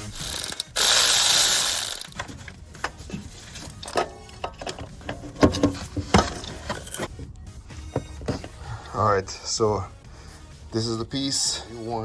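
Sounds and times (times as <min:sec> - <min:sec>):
tools and metal parts clinking: 0:00.0 - 0:07.1.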